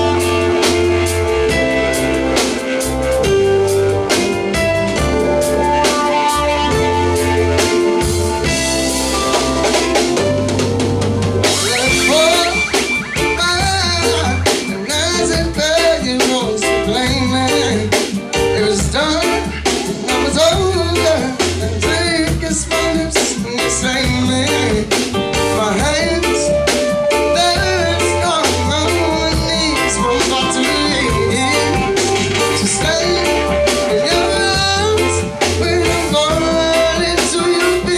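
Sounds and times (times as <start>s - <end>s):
live band with guitar bass drums: 0.0s - 37.9s
lead vocal singing: 11.4s - 25.0s, 27.4s - 37.9s.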